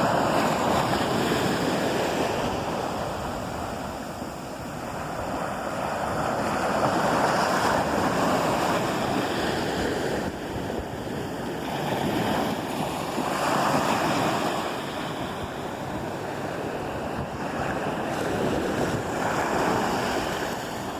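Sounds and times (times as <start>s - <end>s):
ocean surf washing on shore: 0.0s - 20.9s.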